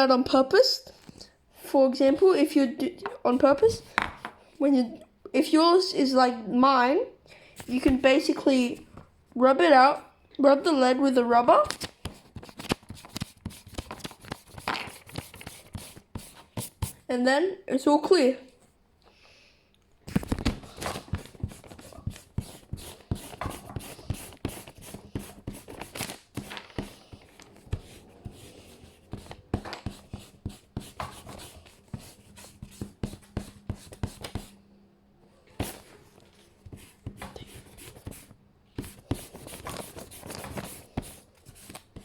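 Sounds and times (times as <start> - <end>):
eraser rubbing on paper: 12.2 - 17.1, 21.2 - 34.6, 36.6 - 42.0.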